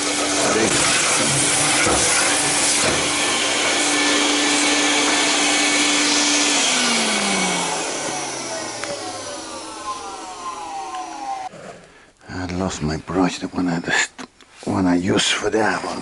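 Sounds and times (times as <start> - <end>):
vacuum cleaner running: 0.0 - 11.5
vacuum motor winding down: 0.0 - 11.5.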